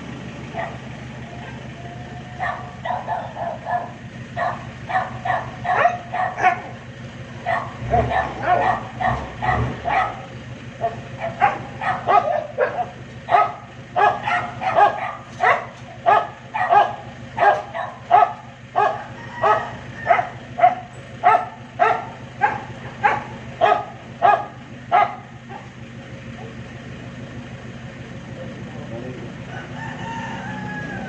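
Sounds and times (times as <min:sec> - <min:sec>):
dog barking: 0:00.5 - 0:00.8, 0:02.4 - 0:06.8, 0:07.4 - 0:25.8.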